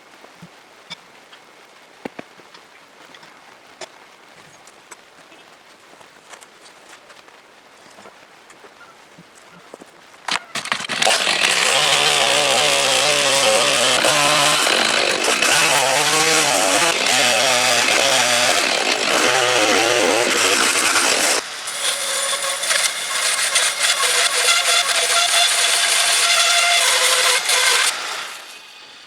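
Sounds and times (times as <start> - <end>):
bandsaw sawing log: 10.5 - 28.9.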